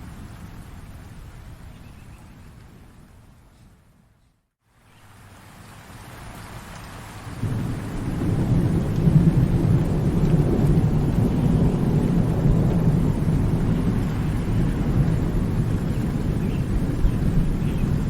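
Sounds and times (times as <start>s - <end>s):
rain: 0.0s - 18.0s
thunder rumbling: 7.3s - 18.0s.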